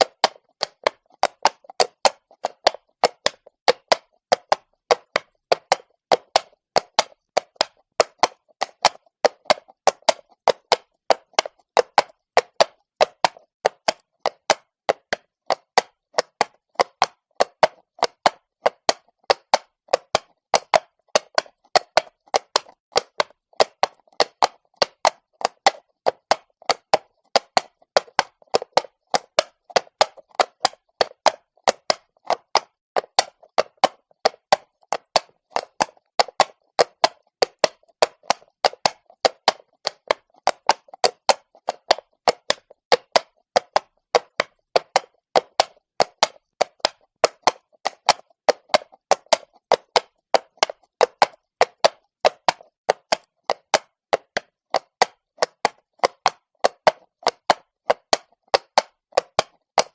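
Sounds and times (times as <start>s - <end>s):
horse hooves clopping on cobblestones: 0.0s - 59.9s.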